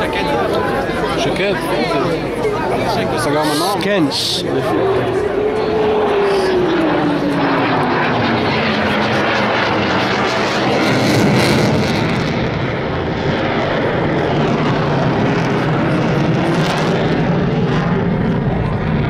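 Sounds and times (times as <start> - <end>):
jet fighter flying past: 0.0 - 19.0.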